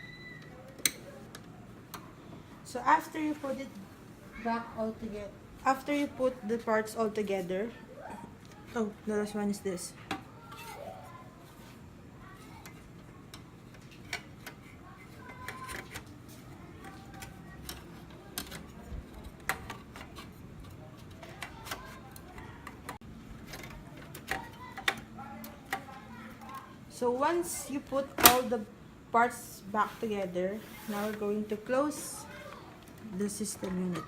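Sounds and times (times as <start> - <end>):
computer parts clicking and knocking: 16.8 - 25.1.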